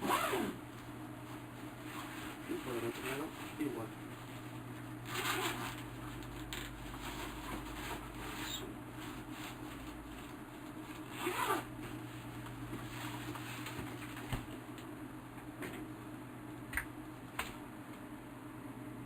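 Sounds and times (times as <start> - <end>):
backpack zipper pulled: 0.0 - 0.6, 5.1 - 5.8, 11.1 - 11.7.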